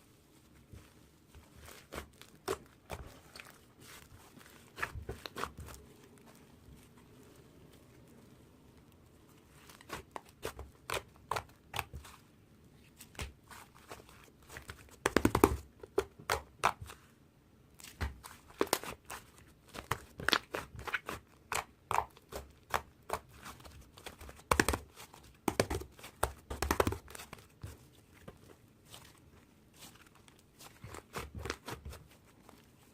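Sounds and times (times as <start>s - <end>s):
crunching and crinkling: 0.5s - 15.0s, 27.0s - 32.9s.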